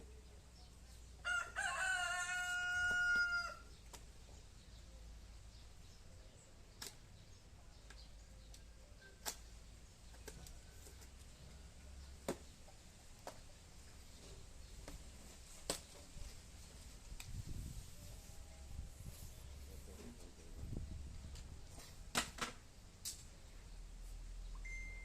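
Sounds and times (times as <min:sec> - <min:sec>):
rooster crowing: 0:01.2 - 0:03.6.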